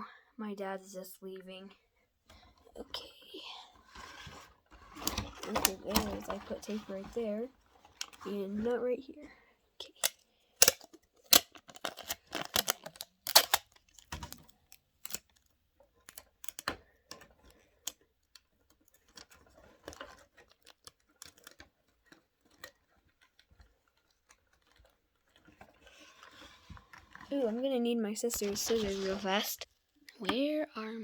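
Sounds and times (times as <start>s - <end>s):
plastic pieces clicking and tapping: 9.8s - 25.6s.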